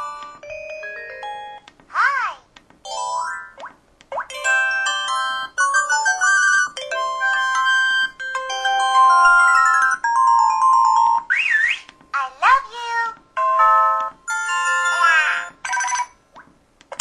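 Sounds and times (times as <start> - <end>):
phone electronic chime melodies: 4.4 - 11.3, 13.4 - 16.1.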